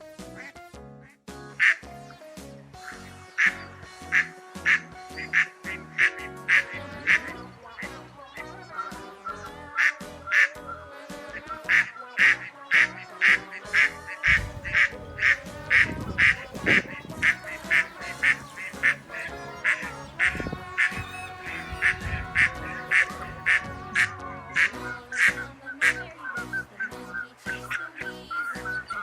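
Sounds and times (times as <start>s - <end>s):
background music: 0.0s - 29.0s
ducks quacking: 1.6s - 1.9s, 2.8s - 29.0s.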